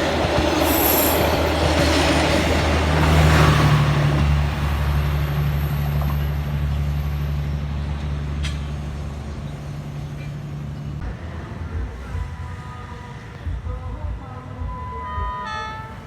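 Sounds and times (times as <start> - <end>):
diesel locomotive engine droning: 0.0 - 16.0.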